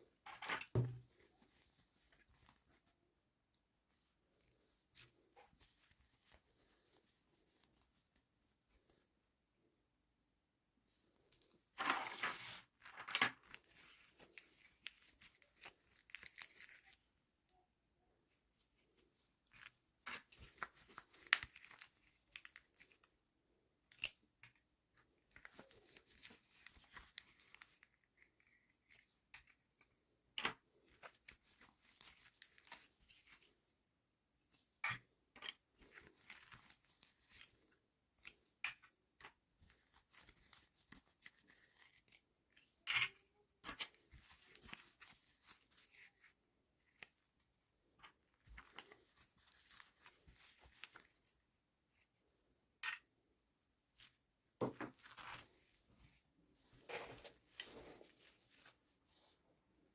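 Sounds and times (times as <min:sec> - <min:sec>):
plastic wrap crinkling and tearing: 0:12.0 - 0:17.0.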